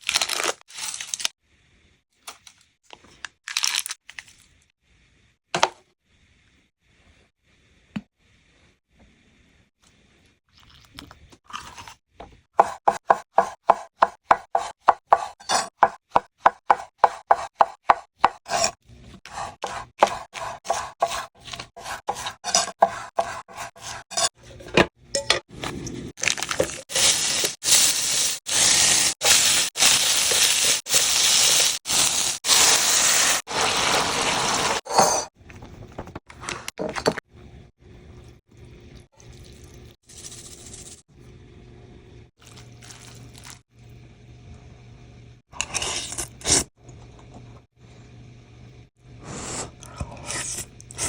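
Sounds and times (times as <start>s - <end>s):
knife chopping on cutting board: 12.6s - 24.0s
food sizzling in hot pan: 26.6s - 34.8s.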